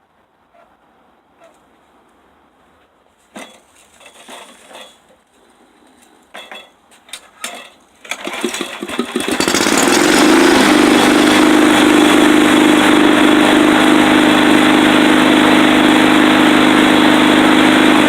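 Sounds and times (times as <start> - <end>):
knocks and clanks: 3.3 - 5.1, 6.3 - 10.0
lawnmower engine running: 8.0 - 18.0.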